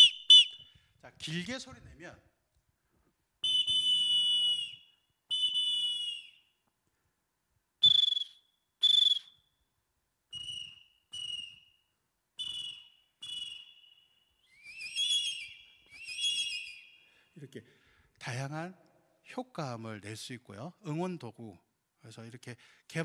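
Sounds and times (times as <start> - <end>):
ocarina whistle notes: 0.0 - 0.8, 3.4 - 6.6, 7.8 - 9.6, 10.3 - 17.4.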